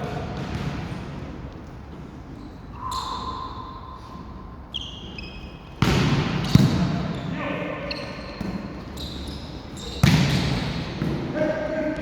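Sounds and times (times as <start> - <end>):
sneakers squeaking on court floor: 1.9 - 11.3.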